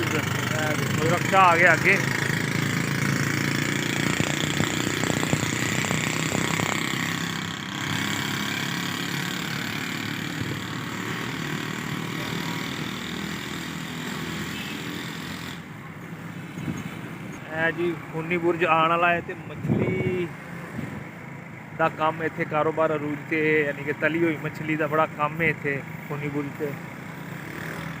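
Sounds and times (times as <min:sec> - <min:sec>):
vehicle engine running: 0:00.0 - 0:20.1
street traffic: 0:00.0 - 0:28.0.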